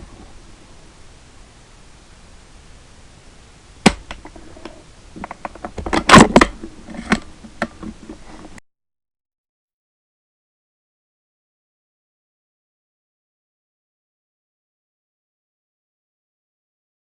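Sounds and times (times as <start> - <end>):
suppressed rifle shots: 3.8 - 4.2.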